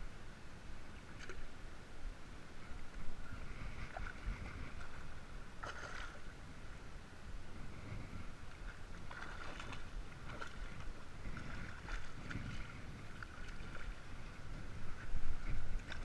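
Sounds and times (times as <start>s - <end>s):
wind rumble on microphone: 2.1s - 16.0s
faint ticks and rustles: 7.7s - 16.0s.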